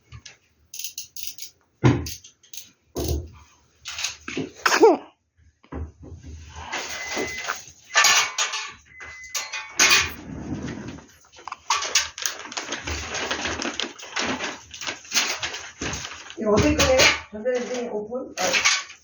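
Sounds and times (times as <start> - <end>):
dishes and utensils clattering: 6.6 - 17.8, 18.4 - 19.0.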